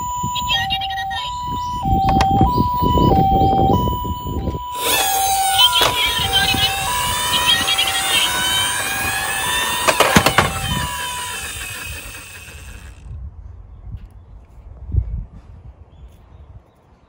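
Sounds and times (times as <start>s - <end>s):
two-tone ambulance siren: 0.0s - 12.9s
toy car rattling down a slope: 4.8s - 13.1s.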